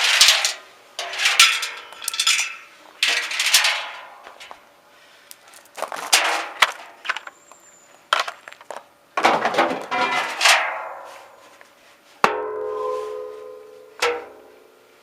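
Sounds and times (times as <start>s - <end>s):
metal clanks and knocks: 9.2s - 11.0s.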